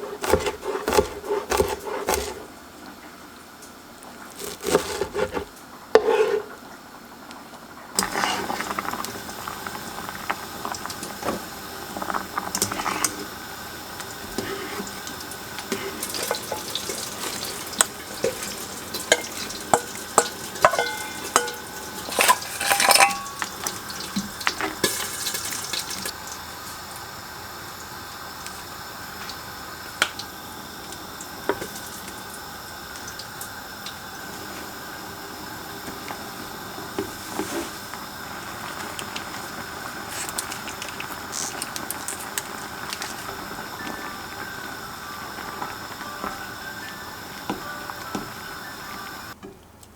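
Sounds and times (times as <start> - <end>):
utensils clinking against pot: 0.0 - 2.4, 4.3 - 6.5, 15.6 - 26.1
cooking hiss: 0.0 - 49.4.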